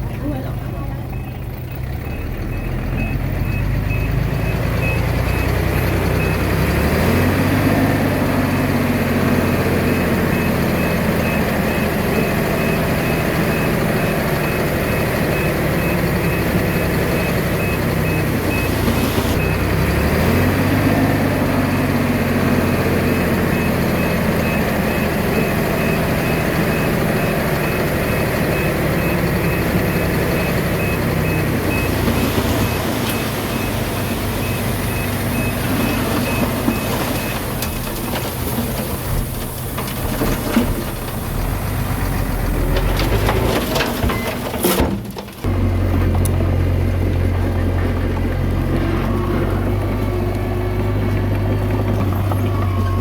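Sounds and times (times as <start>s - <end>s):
bulldozer diesel engine revving: 0.0s - 44.7s, 45.4s - 53.0s
backup alarm beeping: 0.5s - 38.1s.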